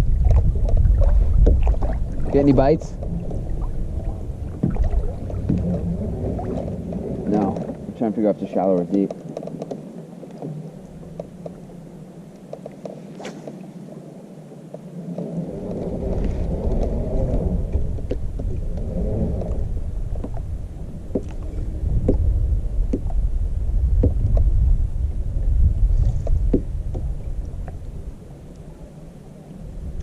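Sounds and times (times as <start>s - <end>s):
wind buffeting microphone: 0.0s - 30.0s
small clicks and knocks: 8.6s - 10.5s.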